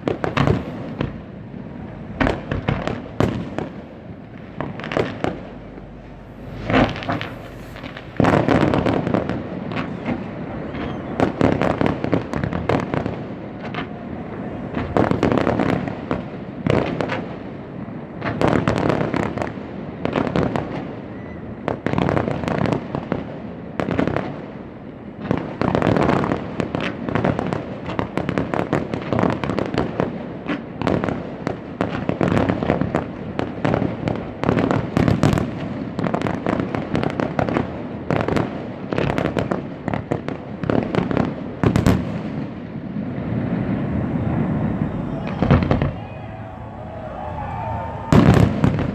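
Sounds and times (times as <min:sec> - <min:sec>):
fireworks bursting and crackling: 0:00.0 - 0:17.2, 0:43.2 - 0:48.9.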